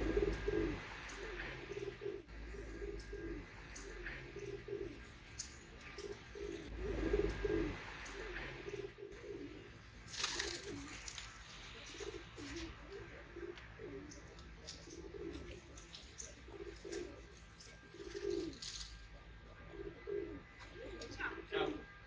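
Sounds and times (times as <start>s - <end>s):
pigeons cooing: 0.0s - 22.0s.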